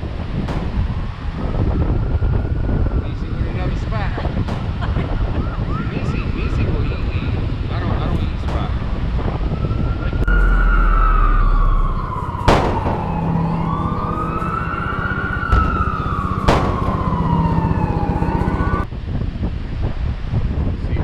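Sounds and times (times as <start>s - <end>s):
siren wailing: 9.3s - 18.9s.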